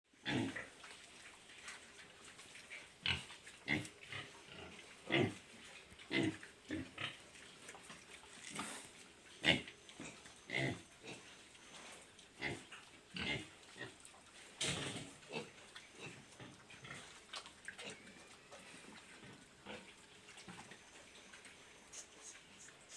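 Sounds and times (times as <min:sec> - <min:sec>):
pigs grunting: 0:00.2 - 0:00.8, 0:02.7 - 0:21.3.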